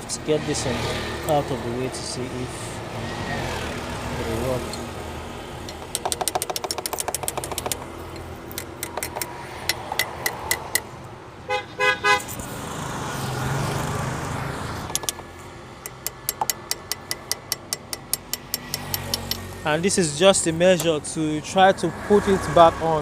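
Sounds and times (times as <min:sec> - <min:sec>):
quick clicks of tool work: 0:05.6 - 0:10.9, 0:14.8 - 0:19.4
car horn toots: 0:11.5 - 0:12.3.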